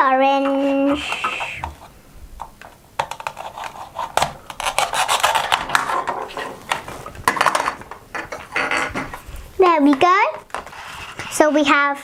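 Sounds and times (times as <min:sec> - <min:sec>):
velcro tearing apart: 0:03.4 - 0:05.8.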